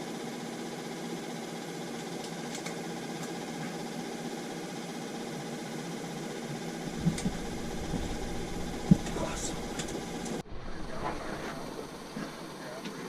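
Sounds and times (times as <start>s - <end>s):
small motor humming: 0.0s - 10.4s
low rumble: 6.8s - 12.6s
short thumps: 7.0s - 10.0s.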